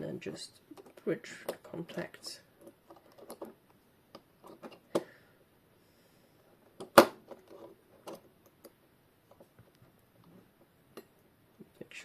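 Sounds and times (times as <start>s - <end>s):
small parts clicking and knocking: 0.7s - 5.1s, 6.6s - 10.0s.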